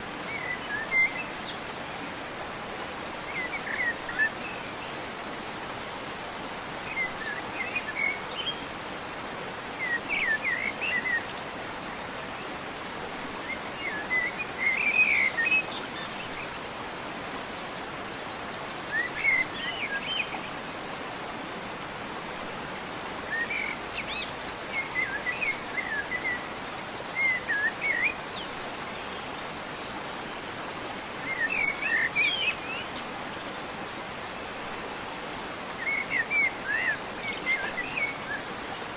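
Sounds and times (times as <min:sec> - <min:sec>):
steady background hiss: 0:00.0 - 0:38.9.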